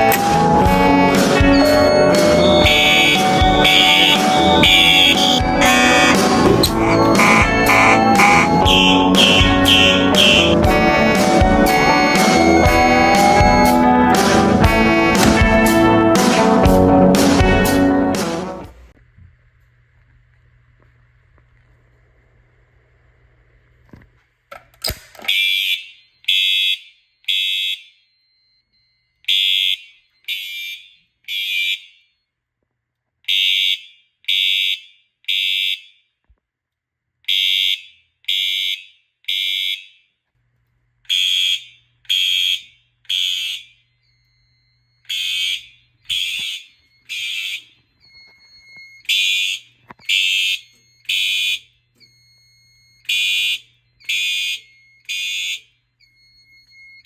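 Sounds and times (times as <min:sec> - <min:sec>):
buzzing evacuation horn blasts: 0:00.0 - 0:18.4, 0:45.1 - 0:47.6.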